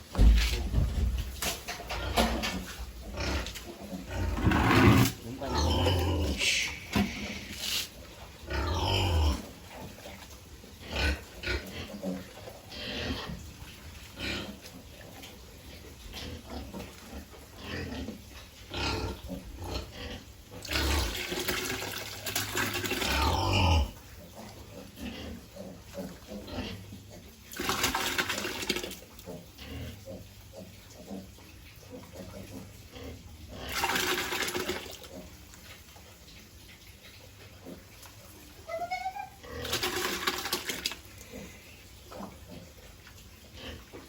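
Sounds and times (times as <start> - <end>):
piglets grunting and squealing: 1.8 - 35.4, 37.4 - 44.0
water splashing: 21.0 - 23.2, 27.5 - 29.0, 33.7 - 35.1, 39.6 - 41.2.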